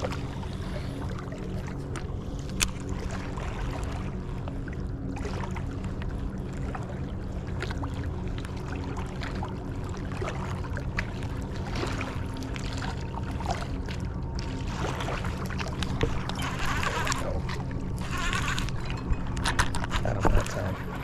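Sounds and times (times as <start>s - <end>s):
small waves lapping on shore: 0.0s - 21.0s
steady low hum: 0.0s - 21.0s.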